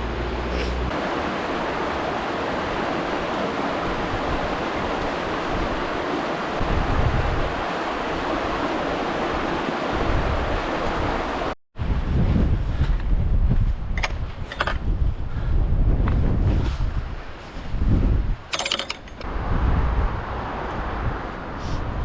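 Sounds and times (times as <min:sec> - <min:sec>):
stream rushing: 0:00.0 - 0:11.6
wind rumble on microphone: 0:00.0 - 0:22.0.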